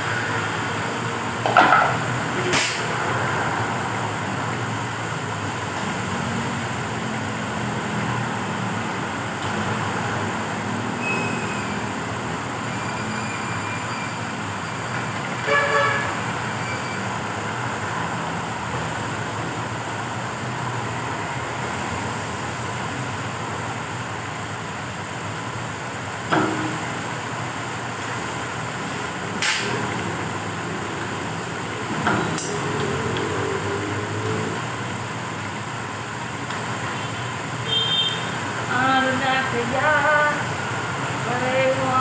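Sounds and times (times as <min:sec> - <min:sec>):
horn-like toot: 0:15.4 - 0:16.2
sharp click: 0:29.4 - 0:29.8.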